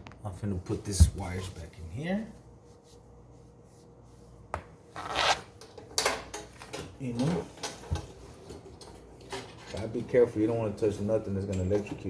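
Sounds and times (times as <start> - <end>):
rustling and scraping of wires: 5.0 - 12.0.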